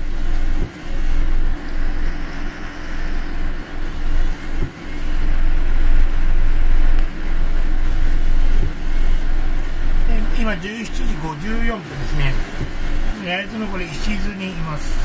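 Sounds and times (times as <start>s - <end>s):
heavy rain on car: 0.0s - 15.0s
low rumble: 0.0s - 15.0s.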